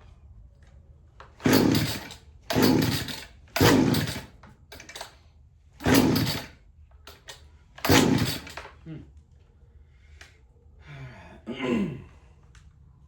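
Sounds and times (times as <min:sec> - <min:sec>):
chainsaw engine turning over: 0:01.3 - 0:05.2, 0:05.8 - 0:08.8
chainsaw recoil starter yanks: 0:01.3 - 0:05.2, 0:05.8 - 0:08.8.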